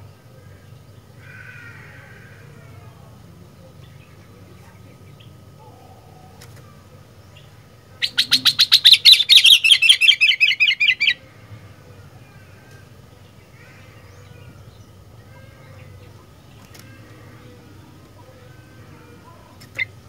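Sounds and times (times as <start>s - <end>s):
faint steady hum: 0.0s - 20.0s
bird chattering: 5.0s - 20.0s.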